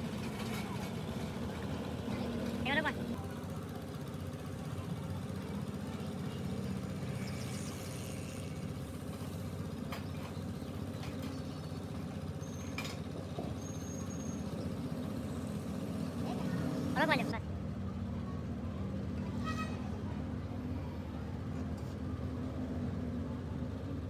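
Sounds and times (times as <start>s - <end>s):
machinery droning: 0.0s - 3.2s.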